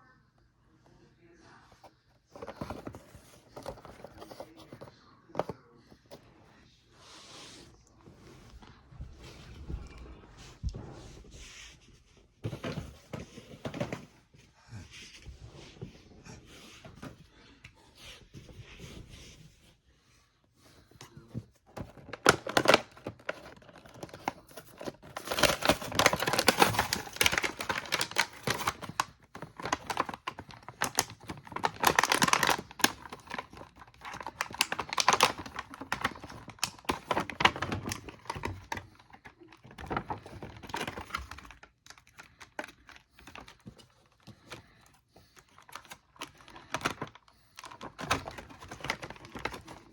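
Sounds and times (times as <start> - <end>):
packaging crinkling and tearing: 21.8 - 44.8, 45.4 - 49.9.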